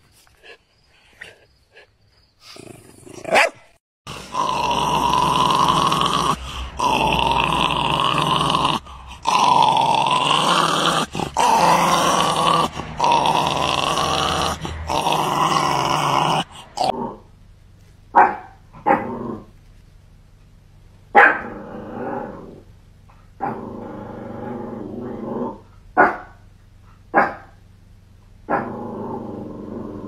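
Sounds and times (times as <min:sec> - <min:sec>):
dog growling: 0:02.5 - 0:17.3, 0:18.8 - 0:19.6, 0:21.3 - 0:22.7, 0:23.4 - 0:25.7, 0:28.5 - 0:30.0
dog barking: 0:03.3 - 0:03.7, 0:18.2 - 0:19.1, 0:21.2 - 0:21.6, 0:26.0 - 0:26.4, 0:27.1 - 0:27.6.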